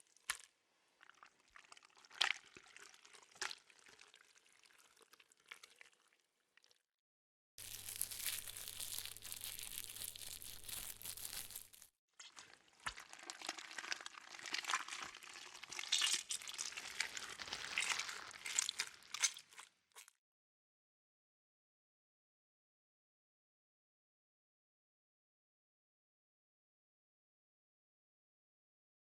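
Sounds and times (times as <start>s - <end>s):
wet slime squelching: 0.1s - 6.7s, 7.6s - 20.2s
slime popping: 7.6s - 11.9s.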